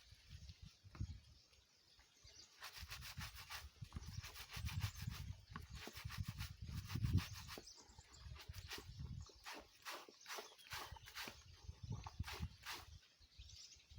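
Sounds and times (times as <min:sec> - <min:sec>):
wet clothes scrubbed by hand: 0:02.6 - 0:12.9.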